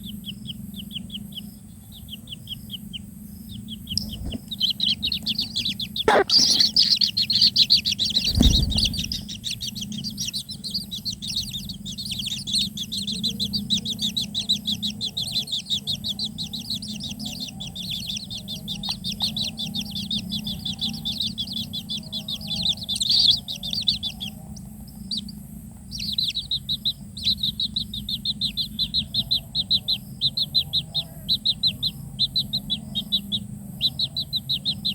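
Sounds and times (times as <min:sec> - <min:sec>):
chicks begging chirps: 0:00.0 - 0:34.9
thumps: 0:08.2 - 0:09.4.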